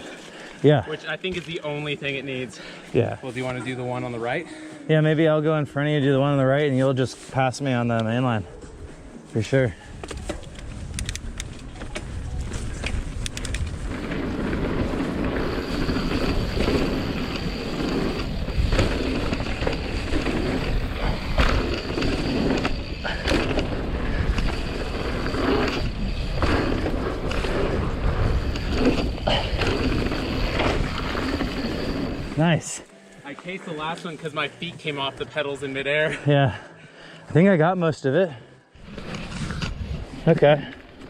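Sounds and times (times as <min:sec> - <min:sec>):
bike parts rattling: 0:10.0 - 0:32.4
bike tyres skidding on dirt: 0:12.5 - 0:32.4.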